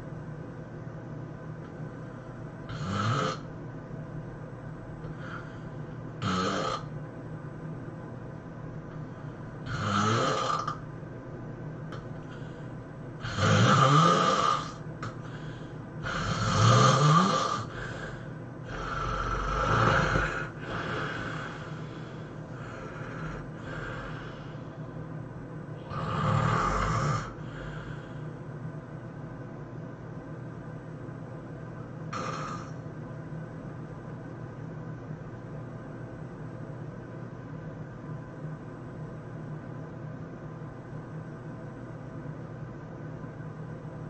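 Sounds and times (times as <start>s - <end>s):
person snoring: 2.7s - 3.5s, 5.0s - 6.9s, 9.6s - 10.8s, 13.2s - 24.7s, 25.8s - 28.2s, 32.1s - 32.8s.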